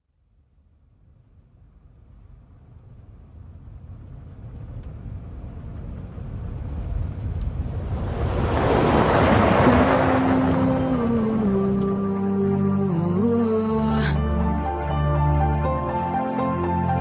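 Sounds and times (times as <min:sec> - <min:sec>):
rushing wind-like swell with rumble: 0:02.0 - 0:12.2.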